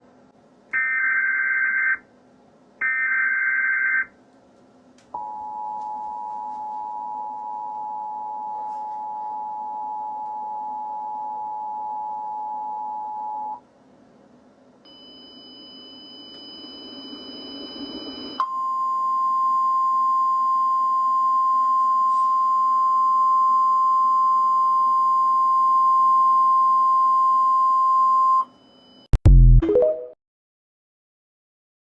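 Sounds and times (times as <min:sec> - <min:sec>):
steady high warning tone: 0:14.9 - 0:19.0.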